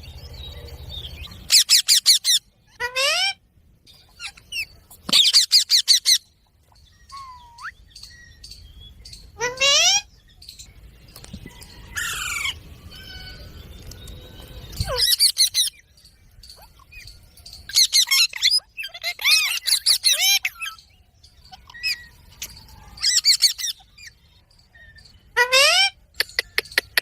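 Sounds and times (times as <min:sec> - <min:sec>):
parakeet squawking: 0:01.4 - 0:03.4, 0:04.1 - 0:06.2, 0:09.4 - 0:10.1.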